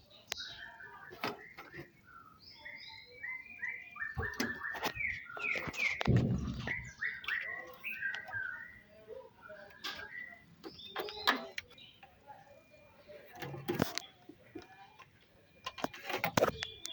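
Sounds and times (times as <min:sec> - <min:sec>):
small birds chirping: 0:00.0 - 0:16.9
low thump: 0:06.1 - 0:07.0.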